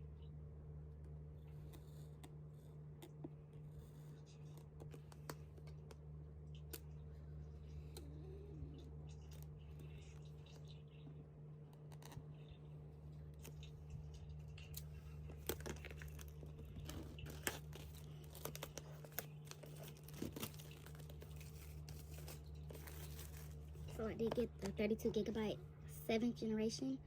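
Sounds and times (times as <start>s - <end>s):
low hum: 0.0s - 27.0s
packaging tearing and crinkling: 15.3s - 23.8s.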